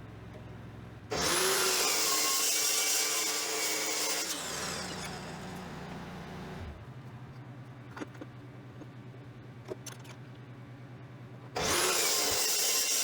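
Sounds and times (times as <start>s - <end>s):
power tool on metal: 1.1s - 6.8s, 11.6s - 13.0s.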